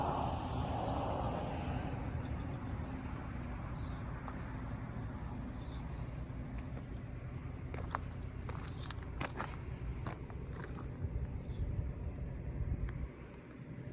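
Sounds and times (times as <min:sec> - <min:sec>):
rushing noise: 0:00.0 - 0:03.7
diesel compressor idling: 0:02.4 - 0:11.6.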